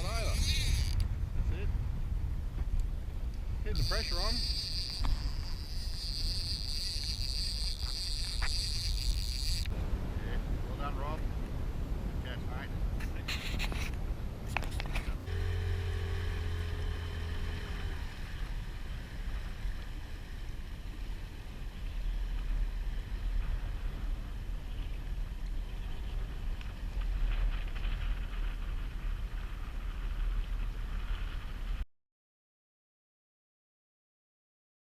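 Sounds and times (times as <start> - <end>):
low rumble aboard boat: 0.0 - 31.8
wind on microphone: 0.0 - 31.8
steady hum: 15.0 - 24.8.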